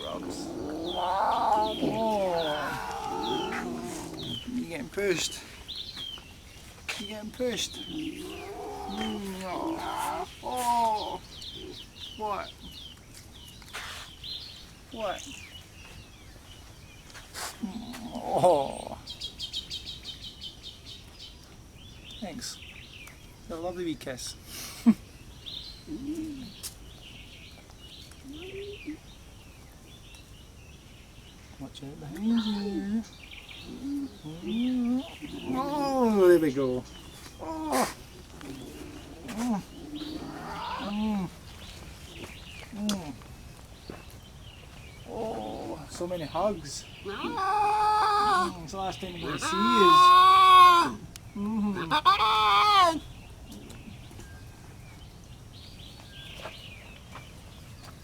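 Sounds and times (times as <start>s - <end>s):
lion cub moaning call: 0.0s - 4.7s, 7.8s - 11.9s, 17.6s - 19.1s, 25.9s - 26.6s, 32.2s - 43.3s, 45.0s - 53.7s
small birds chirping: 0.0s - 58.0s.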